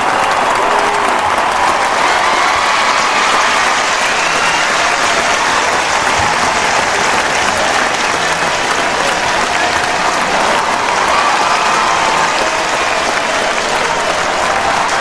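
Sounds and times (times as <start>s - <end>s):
crowd applauding: 0.0s - 15.0s
crowd cheering: 0.0s - 15.0s.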